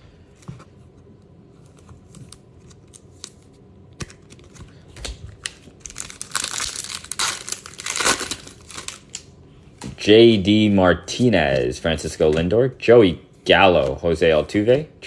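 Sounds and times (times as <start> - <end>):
foil wrapper tearing and crinkling: 4.0 - 9.2.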